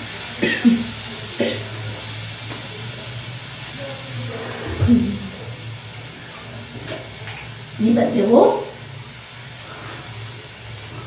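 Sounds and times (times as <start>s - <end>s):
sauce sizzling in hot oil: 0.0s - 11.0s
person coughing: 0.4s - 0.8s.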